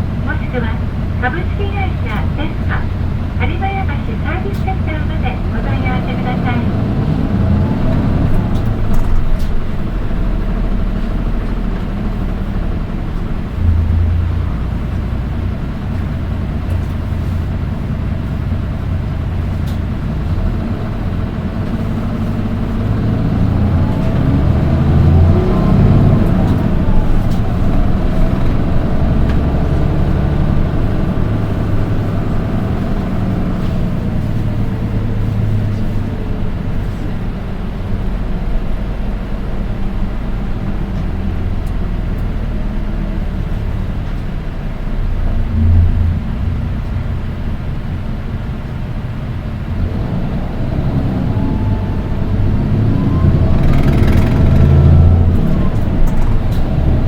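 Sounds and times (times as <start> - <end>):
bus engine running: 0.0 - 57.0.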